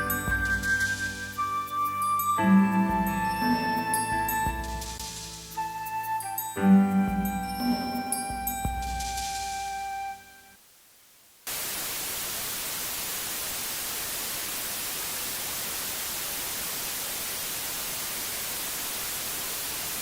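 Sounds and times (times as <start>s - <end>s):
held music notes: 0.0s - 10.6s
television static hiss: 3.2s - 6.1s, 8.8s - 20.0s.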